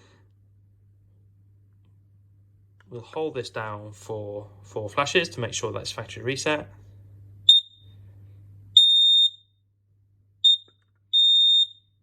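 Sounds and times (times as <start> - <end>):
high-pitched alarm beeps: 7.5 - 7.8, 8.8 - 9.5, 10.4 - 12.0.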